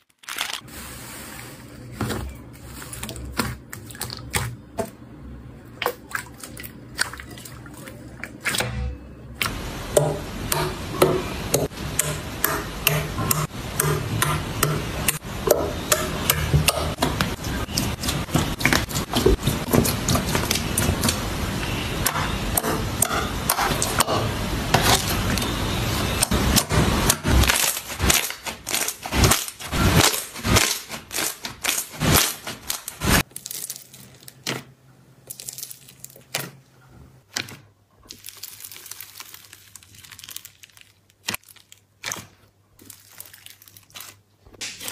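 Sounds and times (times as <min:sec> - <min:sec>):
slime crackling and popping: 0:00.0 - 0:00.6, 0:27.1 - 0:34.6, 0:35.2 - 0:36.5, 0:37.3 - 0:44.9.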